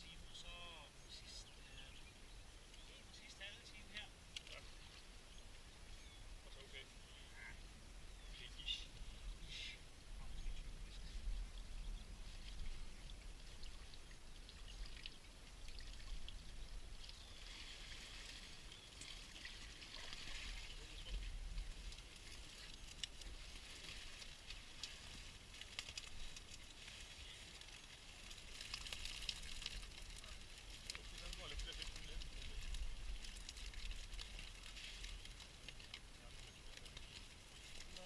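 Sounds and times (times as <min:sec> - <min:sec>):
water trickling and dripping: 0:00.0 - 0:38.0.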